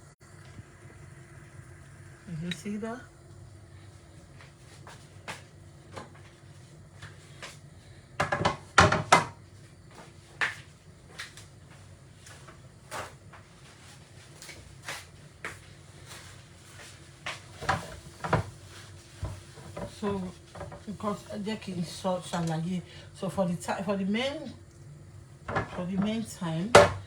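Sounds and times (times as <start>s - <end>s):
low steady hum: 0.0s - 8.3s, 19.3s - 27.0s
utensils and pots knocking: 8.2s - 9.3s, 25.5s - 27.0s.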